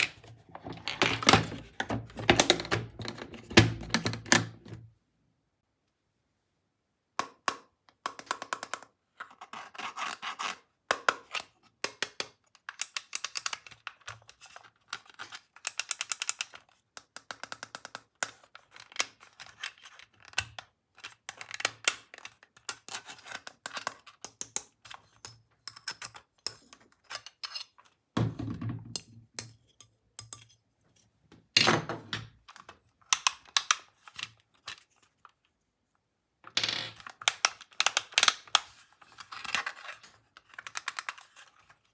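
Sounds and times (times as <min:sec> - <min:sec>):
plastic clicking and tapping: 0:00.0 - 0:04.8.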